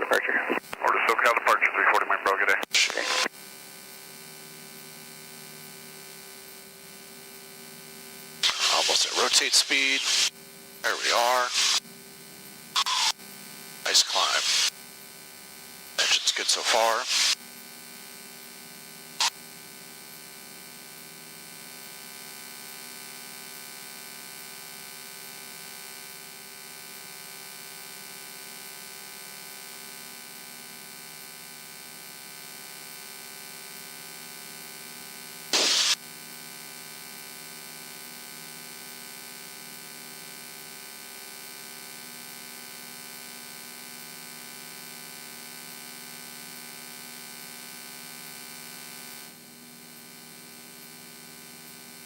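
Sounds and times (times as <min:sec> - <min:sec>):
radio static bursts: 0:00.0 - 0:03.3, 0:08.4 - 0:11.8, 0:12.8 - 0:13.2, 0:13.9 - 0:14.7, 0:16.0 - 0:17.4, 0:35.6 - 0:36.0.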